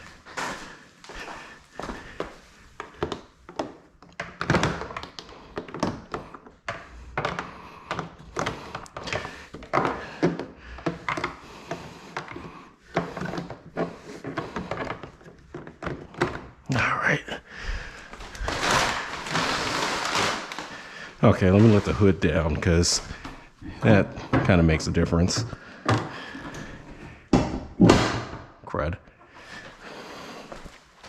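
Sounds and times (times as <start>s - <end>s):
plastic car parts knocking: 2.9s - 16.6s.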